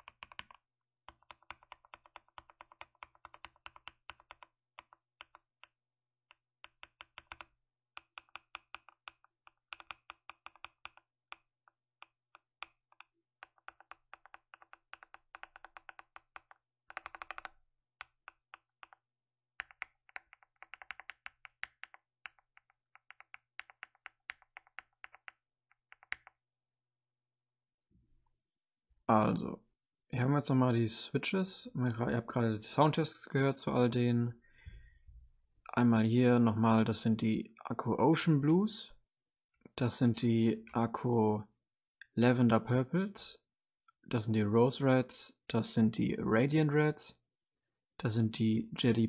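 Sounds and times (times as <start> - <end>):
mechanical keyboard typing: 0.0 - 5.7, 6.6 - 11.4, 12.0 - 19.0, 19.6 - 26.3.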